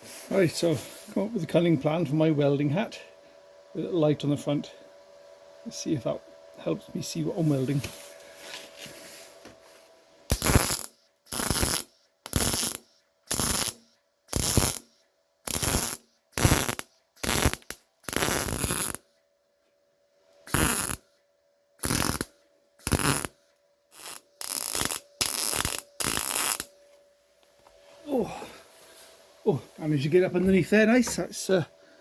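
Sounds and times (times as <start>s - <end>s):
welder tack welding: 10.3s - 19.0s, 20.4s - 21.0s, 21.8s - 26.7s.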